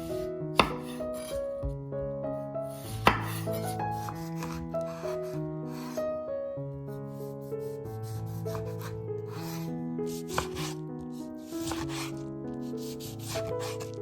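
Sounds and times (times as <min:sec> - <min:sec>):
instrumental background music: 0:00.0 - 0:14.0
rubbing and scraping: 0:02.8 - 0:06.0, 0:07.9 - 0:14.0.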